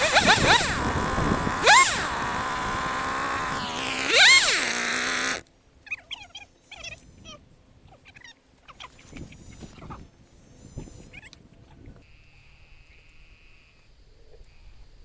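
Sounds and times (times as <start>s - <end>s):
chainsaw revving: 0.0s - 5.4s.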